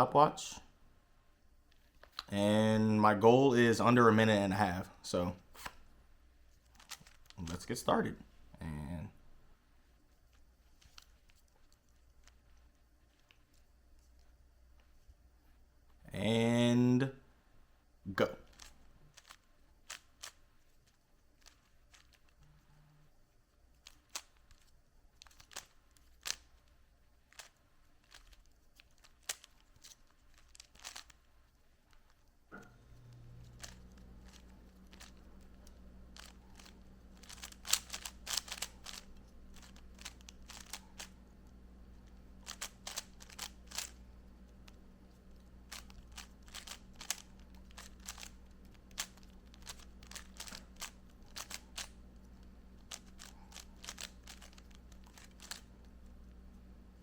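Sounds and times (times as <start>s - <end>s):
steady low hum: 0.0s - 57.0s
puzzle cube layers clicking: 6.6s - 7.7s, 18.4s - 22.4s, 23.7s - 31.3s, 33.4s - 56.2s.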